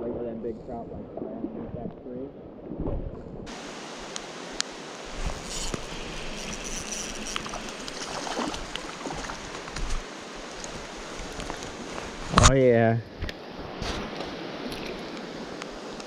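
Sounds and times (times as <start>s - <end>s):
river water rushing: 3.5s - 5.2s, 6.0s - 12.3s.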